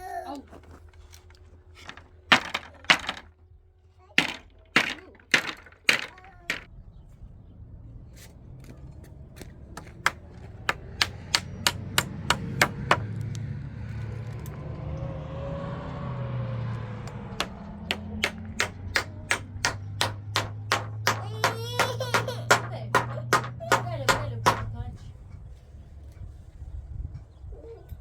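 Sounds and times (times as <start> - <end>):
hammer blows: 10.1 - 13.2, 17.0 - 24.8.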